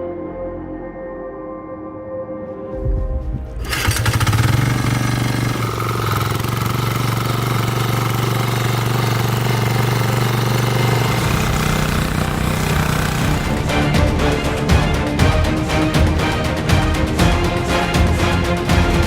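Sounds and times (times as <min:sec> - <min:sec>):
small diesel engine running: 0:03.6 - 0:19.0.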